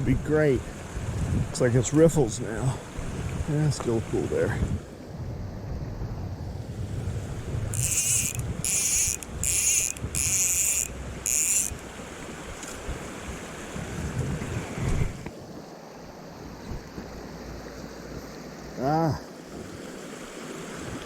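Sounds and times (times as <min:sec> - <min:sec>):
wind on microphone: 0:00.0 - 0:15.7, 0:16.3 - 0:21.0
mountain stream rushing: 0:06.8 - 0:21.0
fishing reel drag buzzing: 0:07.6 - 0:12.0.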